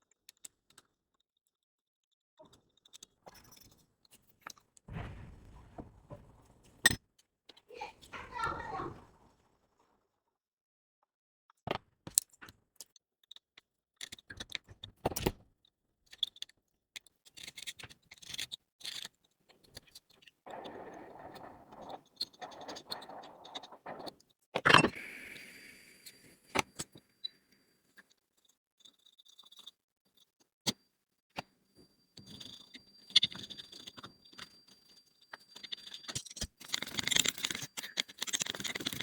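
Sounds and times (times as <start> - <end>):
metal tools clicking and scraping: 32.2 - 39.0.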